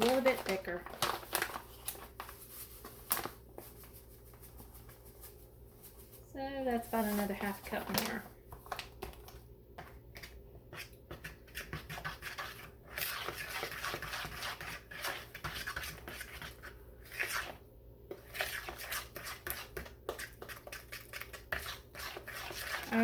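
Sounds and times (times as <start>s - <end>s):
batter sloshing: 0.0s - 23.0s
spoon scraping a mixing bowl: 6.9s - 23.0s.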